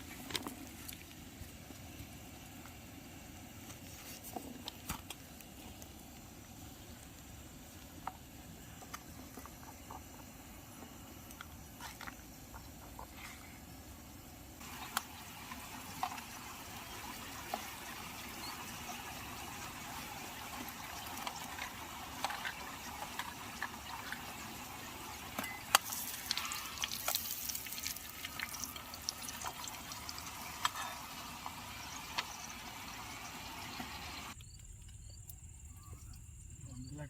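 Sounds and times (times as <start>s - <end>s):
food sizzling in hot oil: 14.6s - 34.4s
oil popping and spattering: 18.9s - 32.9s.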